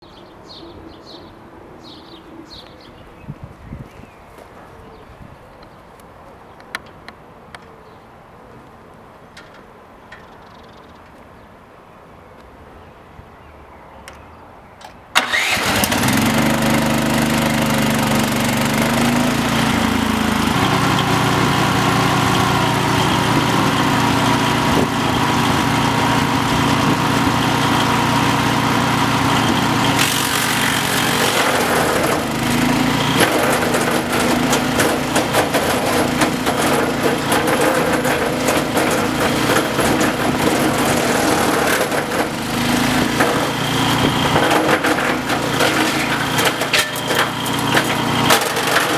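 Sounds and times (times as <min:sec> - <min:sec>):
wood cracking and snapping in chipper: 0:15.2 - 0:21.1, 0:29.2 - 0:48.9
petrol engine starting and running: 0:15.2 - 0:48.9.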